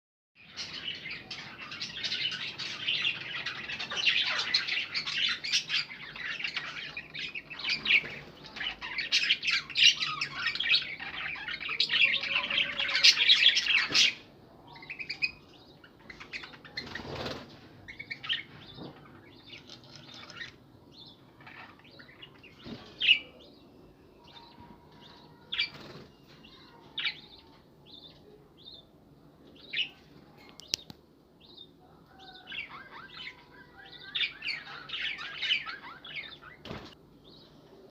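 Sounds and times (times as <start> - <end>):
budgerigars chirping: 0.4 - 14.2.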